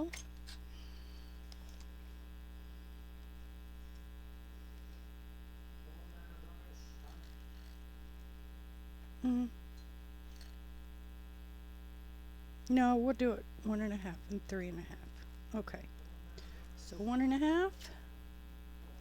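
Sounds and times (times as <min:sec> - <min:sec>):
electrical mains hum: 0:00.0 - 0:19.0
person humming: 0:09.2 - 0:09.6.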